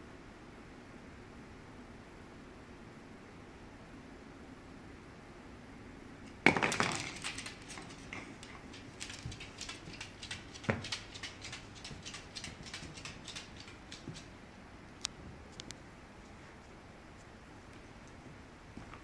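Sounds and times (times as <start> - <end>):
dog gnawing on bone: 6.8 - 14.3.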